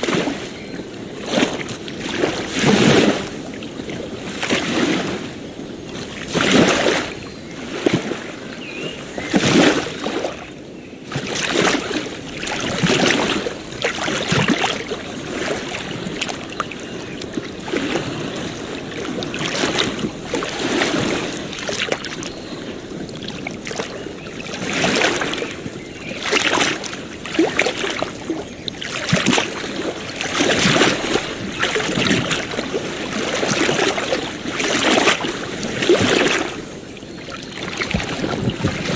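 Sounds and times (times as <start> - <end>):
ocean waves splashing on shore: 0.0 - 38.9.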